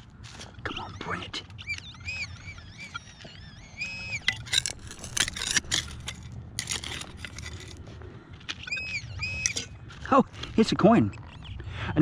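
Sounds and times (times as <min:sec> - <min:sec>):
digging tool scraping stony ground: 0:04.2 - 0:07.9.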